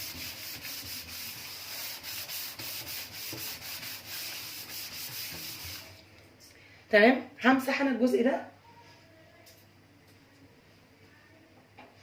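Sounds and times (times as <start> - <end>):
sponge scrubbing steel sink: 0.0 - 6.0.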